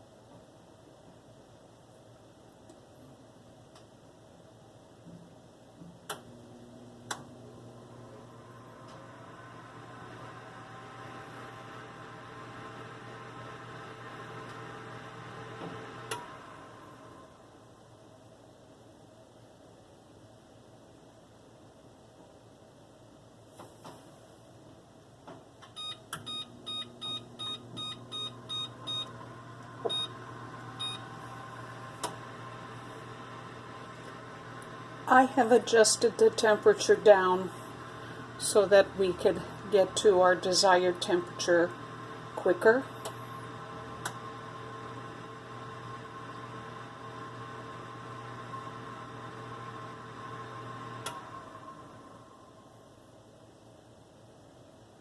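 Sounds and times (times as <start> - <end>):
low steady hum: 0.0 - 55.0
oven control panel beeping: 25.7 - 32.6.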